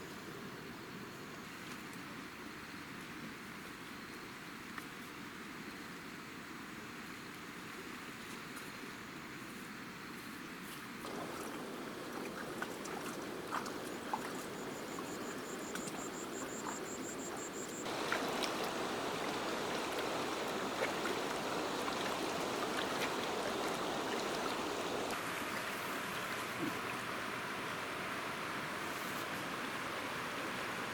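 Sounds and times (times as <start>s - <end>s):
stream water trickling: 11.0s - 30.9s.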